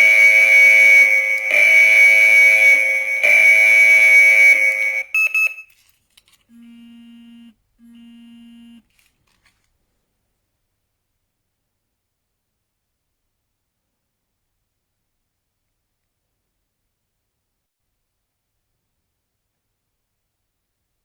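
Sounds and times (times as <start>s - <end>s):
electronic alarm siren: 0.0s - 5.6s
long low beeps: 0.0s - 5.6s.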